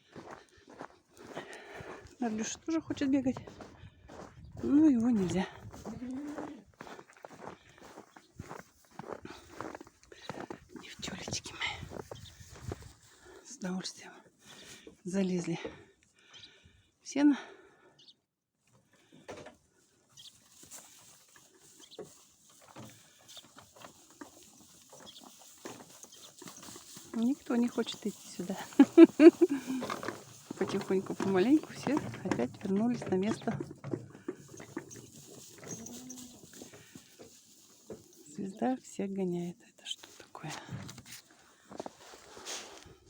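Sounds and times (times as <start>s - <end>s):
footsteps on barn floor: 0.0s - 13.6s, 18.7s - 39.0s, 40.0s - 43.0s
rustling in hay: 20.0s - 32.1s, 34.4s - 38.4s, 41.6s - 42.9s.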